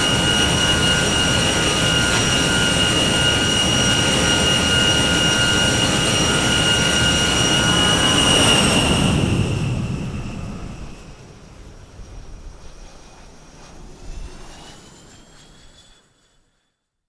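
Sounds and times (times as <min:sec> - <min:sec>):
jet engine roaring and whining: 0:00.0 - 0:16.4.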